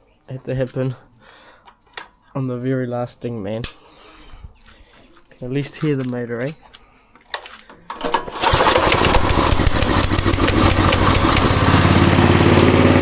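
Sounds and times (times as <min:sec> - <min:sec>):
small engine starting and running: 0:07.9 - 0:13.0.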